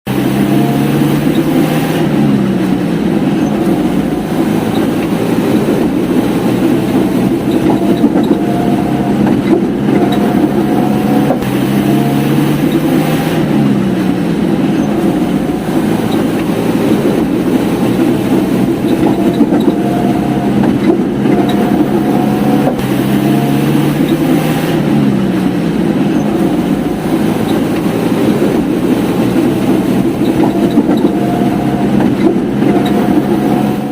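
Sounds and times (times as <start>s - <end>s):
car engine droning while driving: 0.0s - 33.9s.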